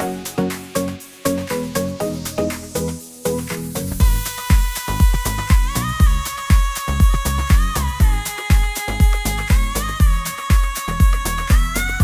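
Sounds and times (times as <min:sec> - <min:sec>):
electronic dance music: 0:00.0 - 0:12.0
heavy kick drum: 0:03.9 - 0:12.0.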